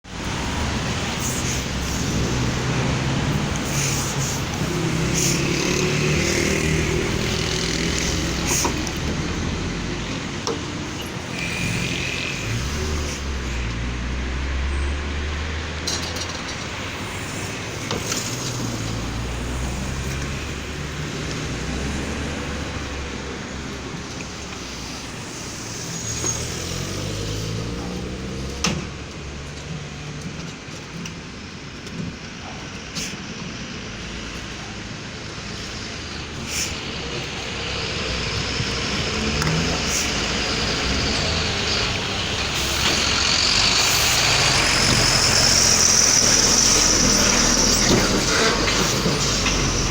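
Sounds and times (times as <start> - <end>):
vehicle engine revving: 0.2 - 15.9, 16.7 - 30.3, 34.4 - 49.9
brief hisses: 36.4 - 36.9.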